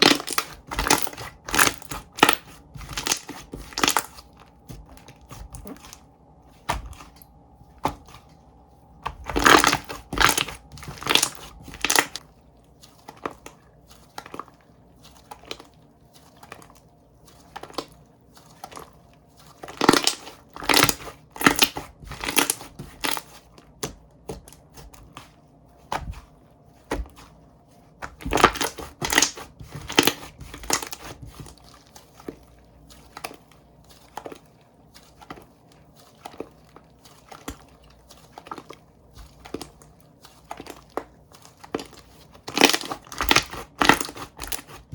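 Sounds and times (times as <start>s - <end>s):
slime crackling and popping: 0.0s - 6.0s, 9.0s - 12.2s, 19.7s - 23.9s, 28.0s - 32.0s, 36.3s - 44.9s.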